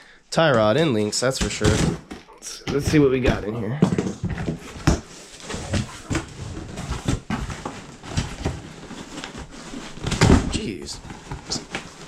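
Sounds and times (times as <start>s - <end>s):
cardboard flaps scraped and knocked: 3.9s - 12.0s.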